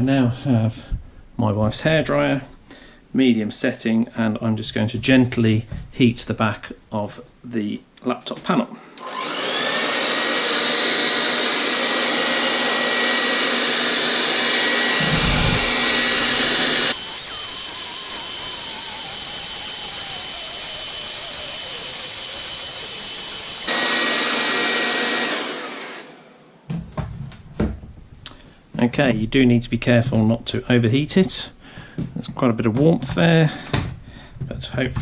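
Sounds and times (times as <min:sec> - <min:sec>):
hairdryer running with high whine: 0:08.8 - 0:26.6.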